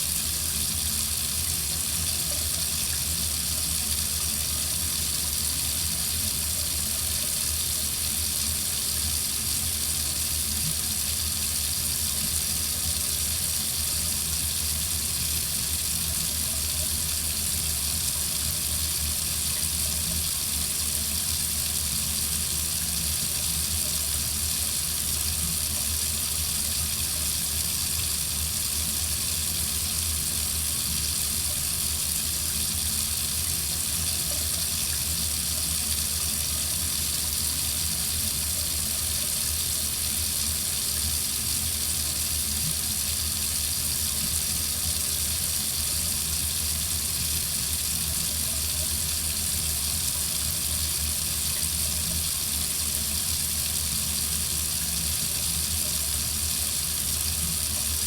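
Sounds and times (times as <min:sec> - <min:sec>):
water faucet running: 0:00.0 - 0:58.0.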